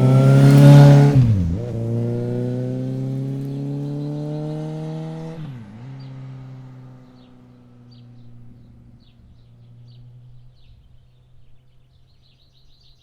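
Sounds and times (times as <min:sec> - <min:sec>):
motorbike engine passing by: 0:00.0 - 0:11.5
birds chirping: 0:02.8 - 0:13.0.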